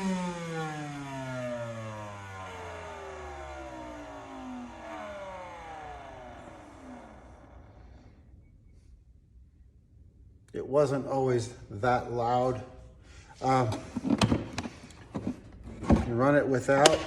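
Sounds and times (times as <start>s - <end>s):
vacuum motor winding down: 0.0s - 8.6s.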